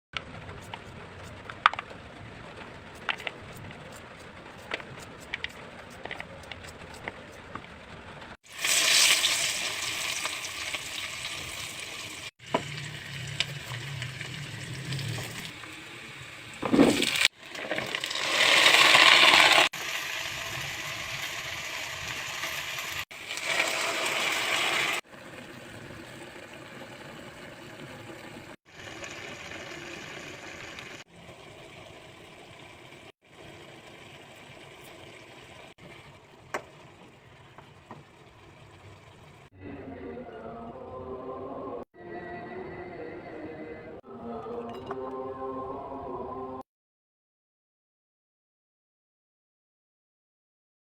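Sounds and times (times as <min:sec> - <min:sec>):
food sizzling in hot oil: 0:08.4 - 0:25.1, 0:28.7 - 0:37.4.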